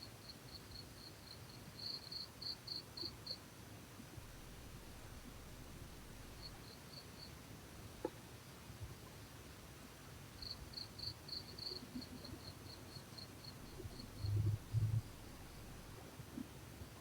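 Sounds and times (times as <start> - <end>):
cricket chirping: 0.2 - 3.4, 6.2 - 7.3, 10.4 - 16.0.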